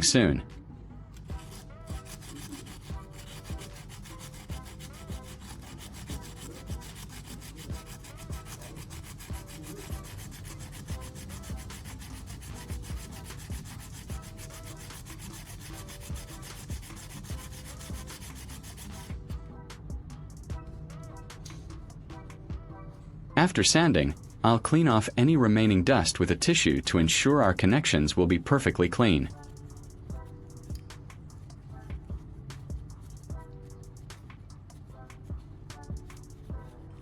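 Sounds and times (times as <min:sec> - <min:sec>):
sandpaper rubbing circuit board: 0:01.2 - 0:19.2, 0:28.7 - 0:31.6.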